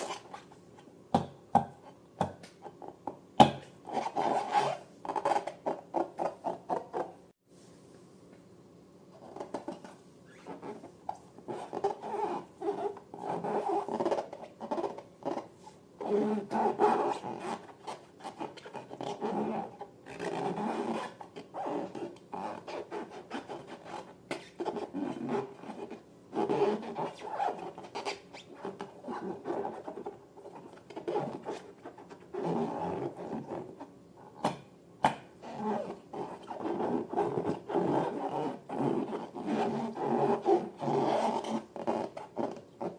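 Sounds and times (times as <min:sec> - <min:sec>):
balloons squeaking when rubbed: 0:00.0 - 0:00.6, 0:03.9 - 0:07.2, 0:09.2 - 0:34.4, 0:35.4 - 0:42.9.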